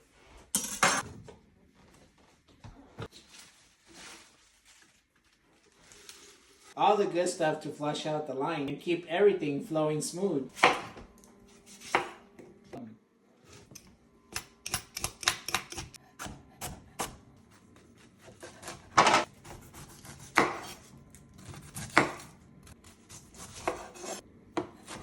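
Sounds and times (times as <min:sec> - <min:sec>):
knife chopping on cutting board: 0:10.6 - 0:11.0, 0:11.7 - 0:12.2, 0:14.4 - 0:17.2, 0:18.2 - 0:25.0.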